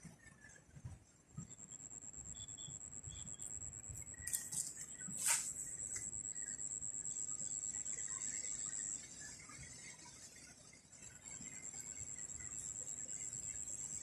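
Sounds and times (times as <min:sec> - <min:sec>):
high-pitched insect trill: 0:01.5 - 0:09.4, 0:11.2 - 0:14.0.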